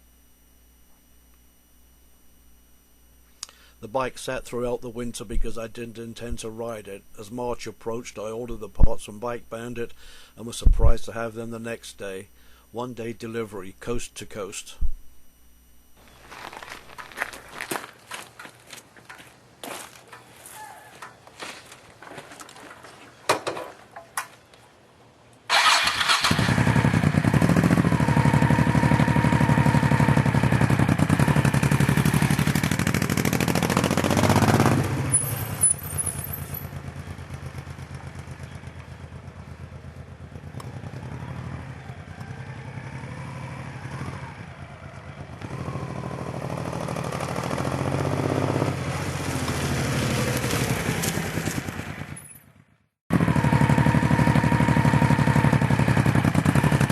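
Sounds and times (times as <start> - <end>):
motorcycle engine starting and revving: 25.5 - 56.9.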